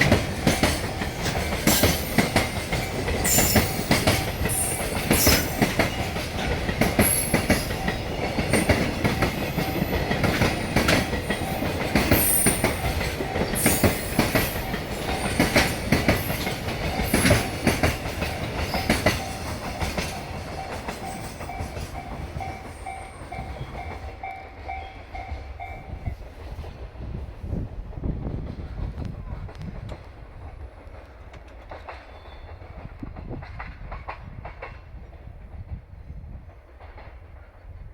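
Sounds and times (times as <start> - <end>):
train wheels clattering: 0.0 - 27.4.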